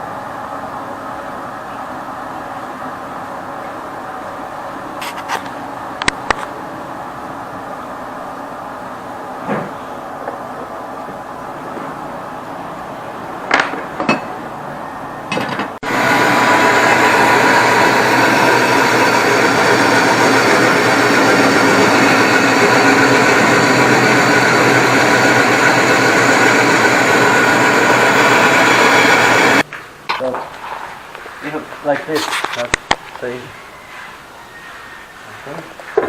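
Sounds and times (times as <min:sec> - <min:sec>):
power tool running: 0:15.8 - 0:29.6.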